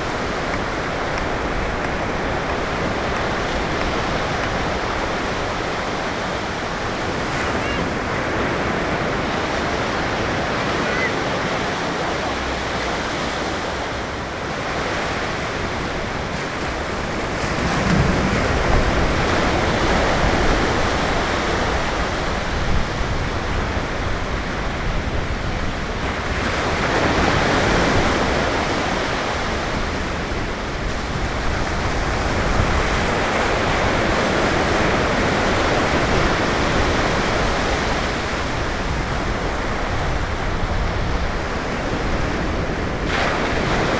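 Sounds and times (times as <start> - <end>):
ocean surf breaking: 0.0 - 43.9.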